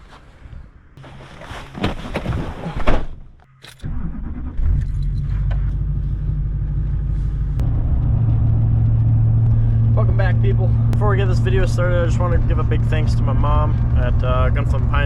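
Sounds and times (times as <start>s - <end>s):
knocks and rustling: 0.0s - 3.4s
vehicle engine low rumble: 3.4s - 15.0s.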